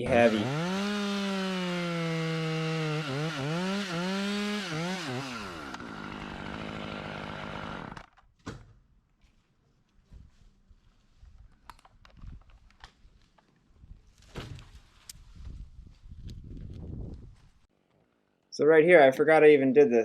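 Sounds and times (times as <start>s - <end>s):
chainsaw cutting wood: 0.0s - 8.2s.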